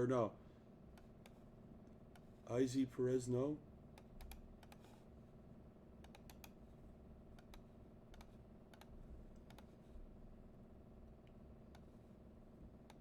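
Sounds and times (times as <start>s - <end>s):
low room hum: 0.0s - 13.0s
typing on computer keyboard: 6.0s - 6.6s.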